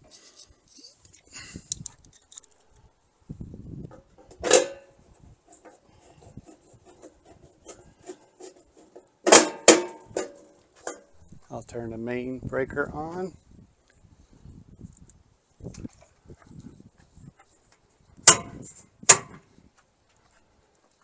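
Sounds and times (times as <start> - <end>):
sharp knocks on metal panel: 18.2 - 19.4.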